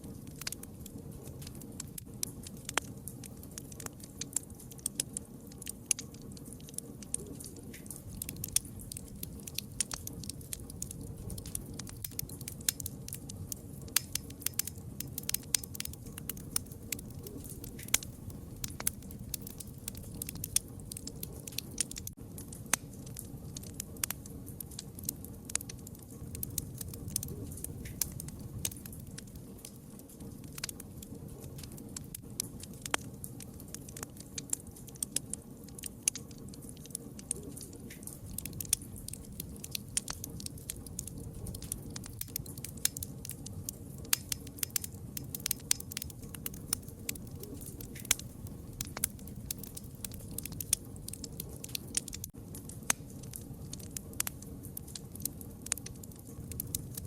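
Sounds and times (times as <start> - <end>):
low rumble of flames: 0.0 - 57.0
wood fire crackling: 0.0 - 57.0.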